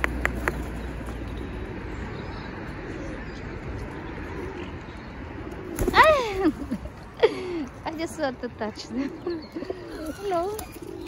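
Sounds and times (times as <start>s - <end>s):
outdoor background noise: 0.0s - 11.0s
pigeons cooing: 1.4s - 6.8s, 8.8s - 11.0s.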